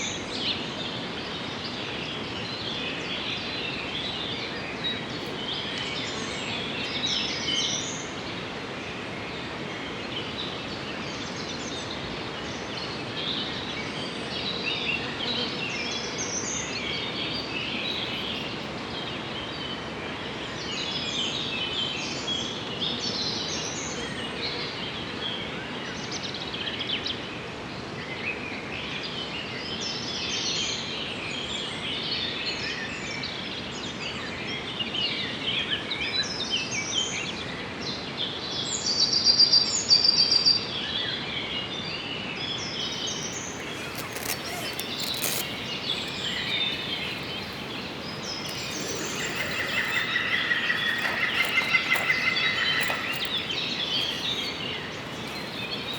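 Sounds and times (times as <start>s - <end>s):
bird trill: 42.9s - 55.9s
songbirds chirping and singing: 42.9s - 55.9s.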